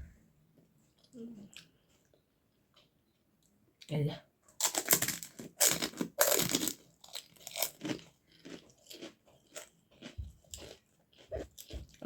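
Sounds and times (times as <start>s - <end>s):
crisp snack crunching: 4.6s - 12.0s.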